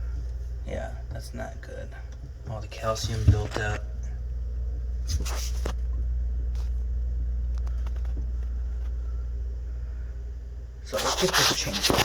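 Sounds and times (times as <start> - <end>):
faint clicks and knocks: 7.5 - 9.0.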